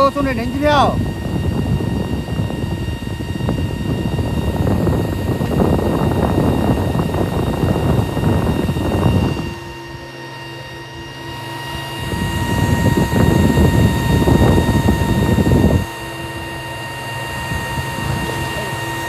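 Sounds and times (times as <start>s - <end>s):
wind buffeting microphone: 0.0s - 10.1s, 11.0s - 19.0s.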